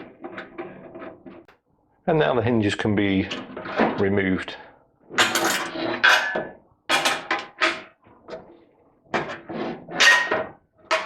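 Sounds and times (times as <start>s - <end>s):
metal hinges knocking and clinking: 10.0s - 11.0s.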